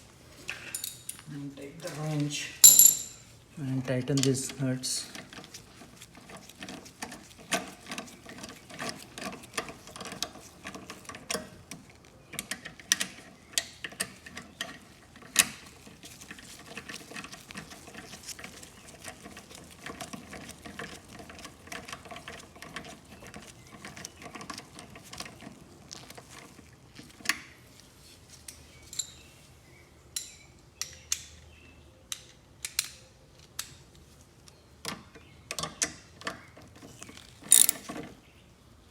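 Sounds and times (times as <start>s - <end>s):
wrench clicking on metal: 37.5s - 37.8s.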